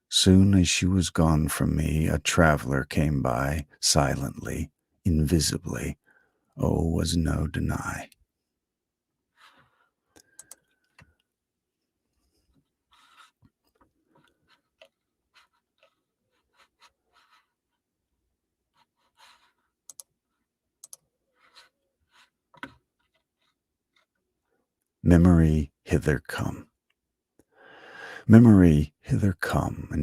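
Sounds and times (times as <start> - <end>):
faint clicks: 10.1 - 11.3.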